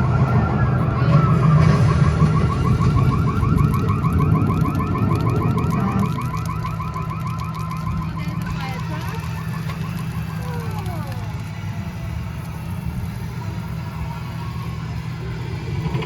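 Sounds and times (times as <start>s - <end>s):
electronic alarm warbling: 0.0s - 11.5s
low rumble: 0.0s - 16.0s.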